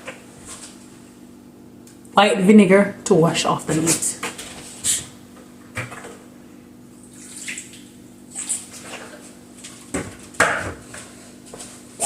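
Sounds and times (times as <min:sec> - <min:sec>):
water splashing and sloshing: 0:07.0 - 0:09.9.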